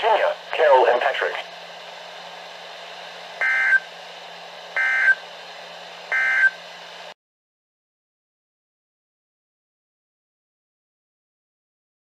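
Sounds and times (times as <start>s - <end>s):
faint radio hum and hiss: 0.0s - 7.1s.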